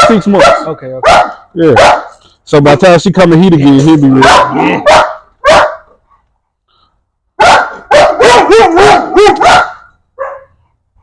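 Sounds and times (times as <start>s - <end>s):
dog barking: 0.0s - 2.2s, 4.1s - 6.0s, 7.4s - 10.7s.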